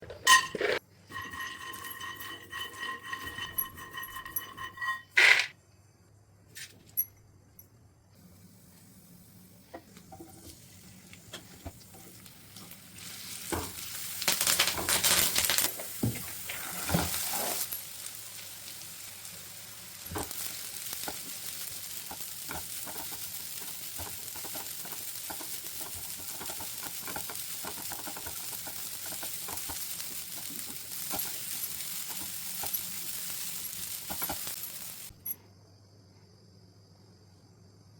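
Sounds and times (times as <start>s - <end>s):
spoon stirring in pan: 0.3s - 5.1s, 20.2s - 35.2s
food sizzling in hot oil: 1.1s - 5.4s, 8.2s - 35.3s.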